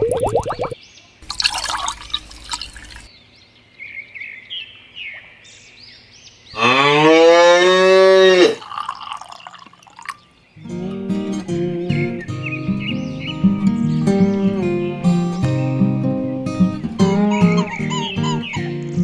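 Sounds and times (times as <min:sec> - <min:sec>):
cow mooing: 0:06.6 - 0:08.7.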